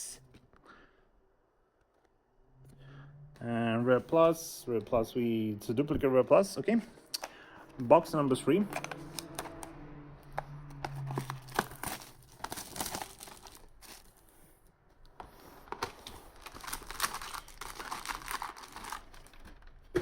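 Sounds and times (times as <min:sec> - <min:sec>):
plastic wrapping crinkling: 0:10.9 - 0:14.4, 0:15.5 - 0:20.0.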